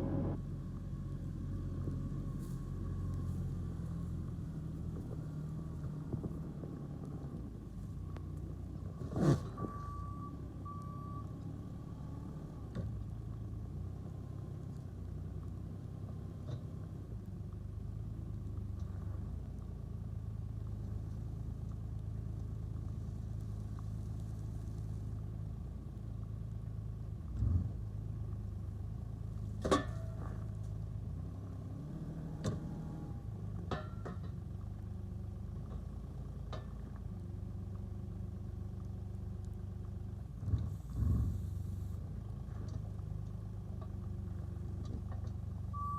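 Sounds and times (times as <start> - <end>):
farm vehicle engine running: 0.0 - 45.9
reversing beeper: 9.0 - 12.0.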